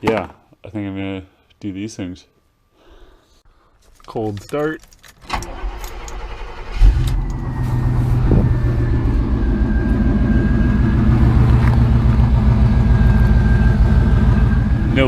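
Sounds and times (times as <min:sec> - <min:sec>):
starter motor cranking: 0:05.2 - 0:07.4
engine idling: 0:05.5 - 0:15.0
faint high whine: 0:07.7 - 0:15.0.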